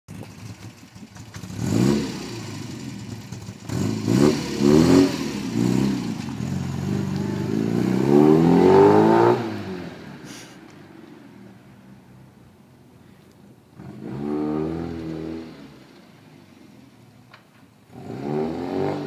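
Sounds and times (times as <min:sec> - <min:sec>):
car engine revving: 0:01.3 - 0:10.2, 0:13.7 - 0:16.3, 0:17.9 - 0:19.0.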